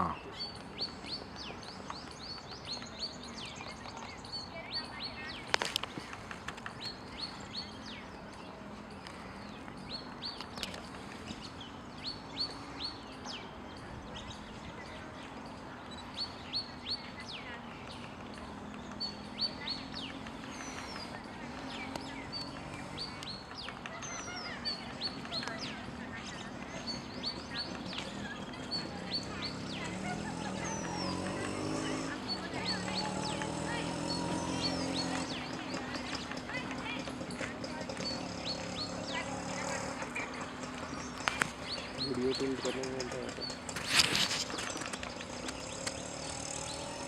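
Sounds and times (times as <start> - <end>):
small birds chirping: 0.0 - 47.0.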